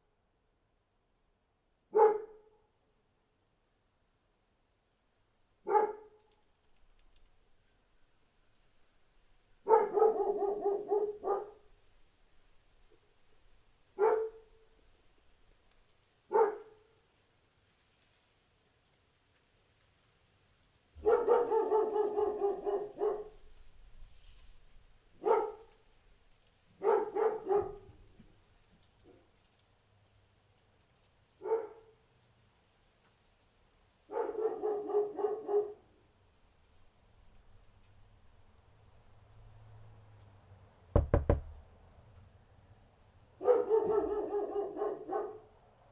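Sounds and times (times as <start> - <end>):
dog barking: 1.9 - 2.6, 5.6 - 6.2, 9.6 - 11.7, 14.0 - 14.7, 16.3 - 16.9, 21.0 - 23.5, 25.2 - 25.8, 26.8 - 28.1, 31.4 - 32.0, 34.1 - 35.9, 43.4 - 45.6.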